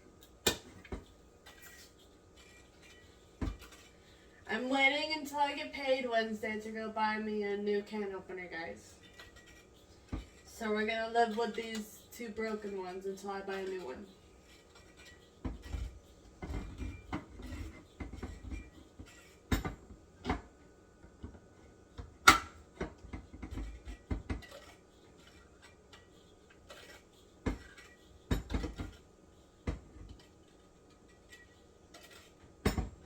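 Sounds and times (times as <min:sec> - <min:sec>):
can opener clicking and clanking: 0:22.3 - 0:22.6.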